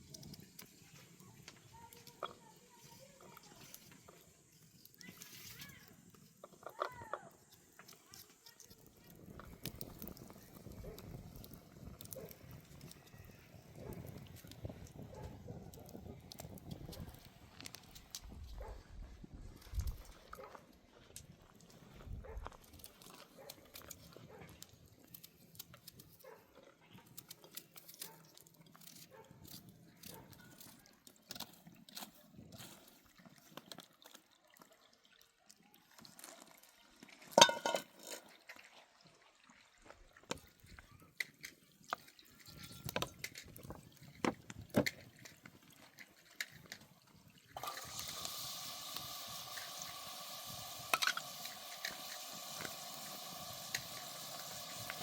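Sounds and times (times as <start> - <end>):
food sizzling over fire: 0.0 - 18.6, 22.6 - 26.2, 27.0 - 33.8, 36.1 - 38.3, 41.1 - 55.0
small clinks and knocks: 37.4 - 38.3.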